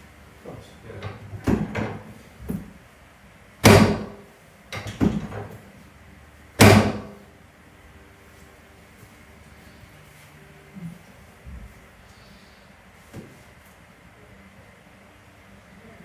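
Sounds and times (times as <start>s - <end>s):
soft knocks and shuffling: 8.3s - 12.0s, 13.0s - 13.8s.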